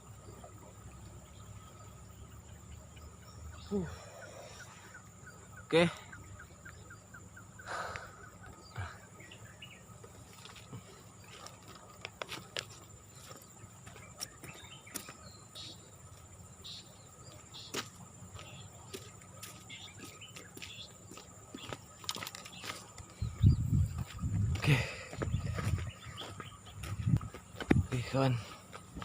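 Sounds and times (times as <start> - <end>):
insects droning: 0.0 - 29.0.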